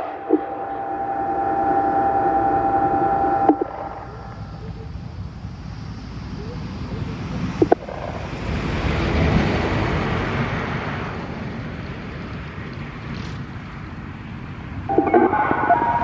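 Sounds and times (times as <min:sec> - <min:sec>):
vehicle passing: 0:00.0 - 0:16.0.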